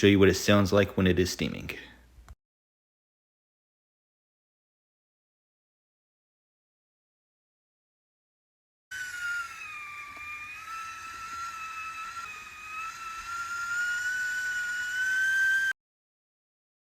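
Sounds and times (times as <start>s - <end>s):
kettle whistling: 8.9s - 15.8s.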